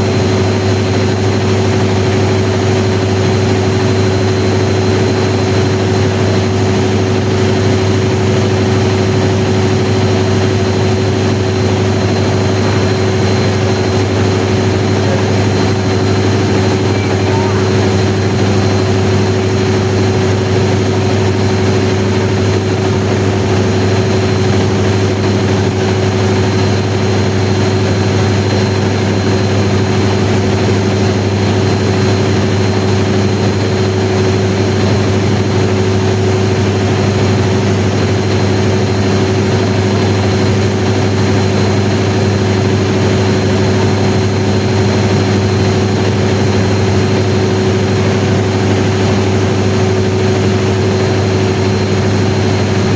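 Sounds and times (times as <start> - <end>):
diesel generator droning: 0.0 - 52.9
thin high whine: 3.7 - 32.1.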